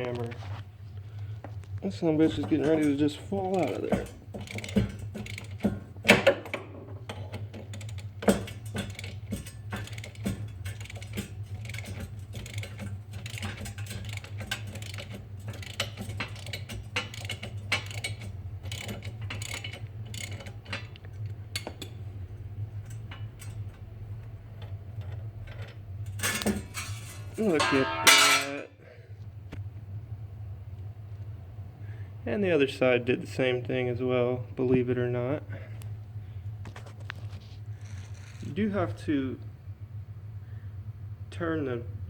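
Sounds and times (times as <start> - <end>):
steady low hum: 0.0 - 42.0
metal clicks and clanks: 2.3 - 28.6
loud metal knocks: 26.2 - 28.6.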